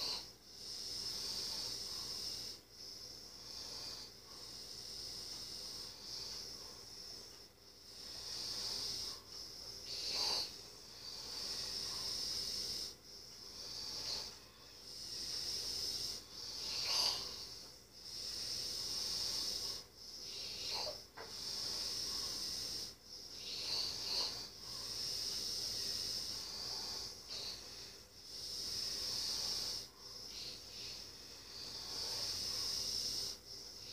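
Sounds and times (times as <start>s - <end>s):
sleeping person wheezy breathing: 0.0s - 33.9s.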